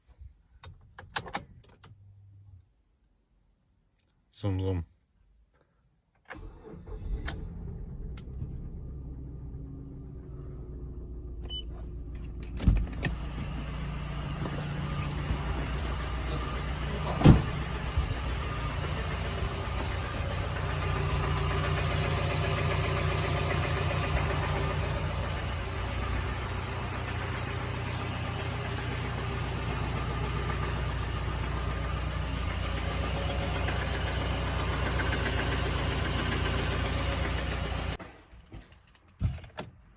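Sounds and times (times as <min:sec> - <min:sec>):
engine running with rod knock: 0:12.0 - 0:38.0
loud thumps: 0:16.7 - 0:18.4.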